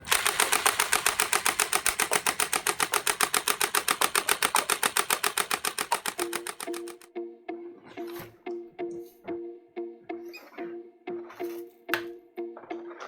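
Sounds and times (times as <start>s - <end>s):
gel blaster firing full auto: 0.0s - 7.1s
music: 6.0s - 13.0s.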